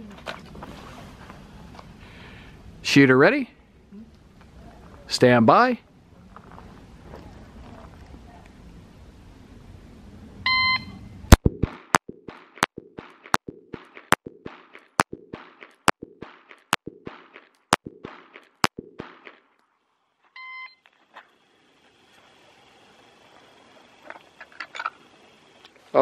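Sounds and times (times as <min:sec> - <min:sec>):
shot timer beep: 0:10.5 - 0:10.9
pistol shots: 0:11.4 - 0:19.5.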